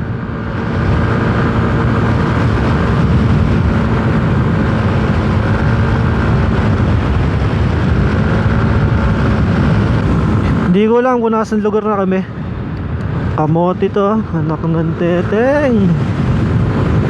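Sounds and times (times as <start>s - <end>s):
scooter engine cruising: 0.0s - 10.9s
wind and road noise: 0.0s - 17.0s.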